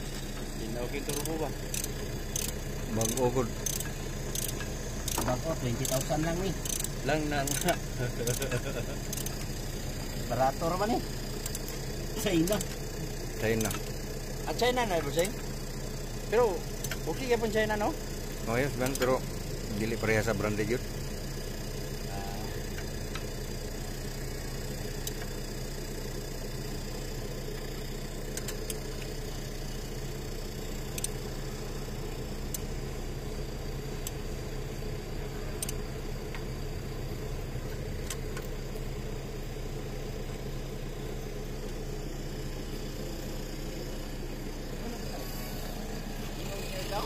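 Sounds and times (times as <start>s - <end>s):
engine idling: 0.0s - 47.0s
light clicks: 28.3s - 29.1s, 30.9s - 31.2s, 35.6s - 36.5s, 38.0s - 38.6s.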